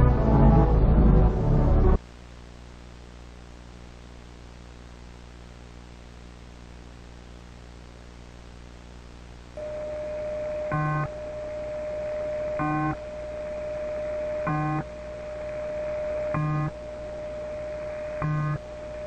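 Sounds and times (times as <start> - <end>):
music: 0.0 - 2.0
low hum: 0.0 - 3.0, 9.6 - 19.0
steady hiss: 2.0 - 19.0
single steady tone: 9.6 - 19.0.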